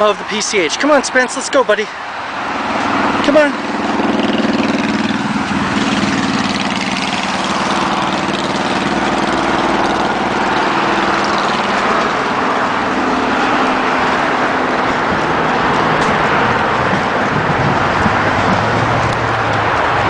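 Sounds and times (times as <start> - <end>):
highway traffic passing: 0.0 - 20.0
heavy engine humming: 2.2 - 20.0.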